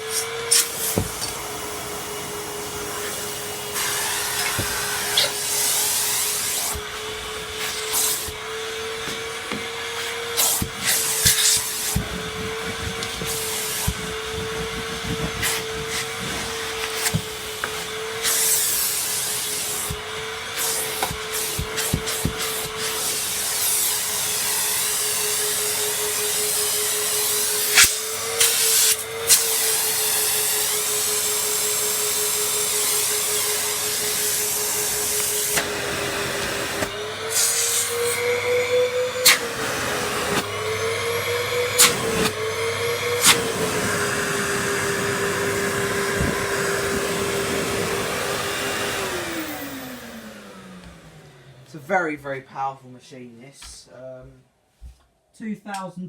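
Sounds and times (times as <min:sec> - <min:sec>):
vacuum cleaner motor whine: 0:00.0 - 0:51.8.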